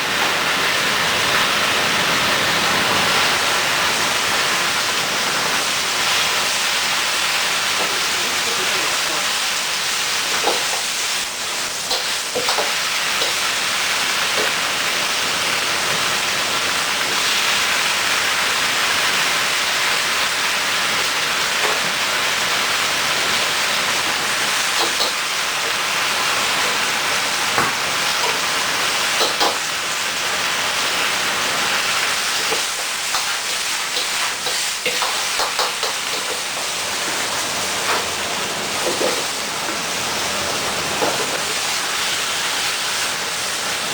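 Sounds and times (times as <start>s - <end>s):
food sizzling in hot oil: 0.0s - 43.9s
cooking utensil clicks and knocks: 10.3s - 10.8s, 11.9s - 13.4s, 24.7s - 25.8s, 29.2s - 29.6s, 32.4s - 36.7s, 38.8s - 39.4s, 41.0s - 41.4s.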